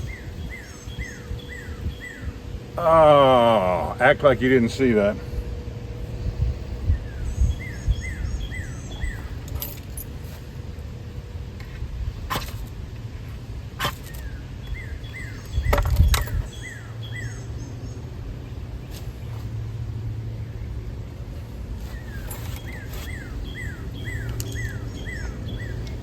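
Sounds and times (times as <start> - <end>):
songbird whistling: 0.0 - 2.4, 6.8 - 9.7, 13.9 - 17.8, 21.8 - 26.0
low rumble: 0.0 - 26.0.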